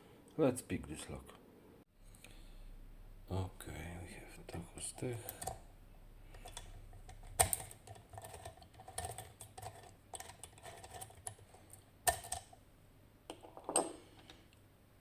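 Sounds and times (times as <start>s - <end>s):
lock pick metal clicks: 6.4s - 12.6s.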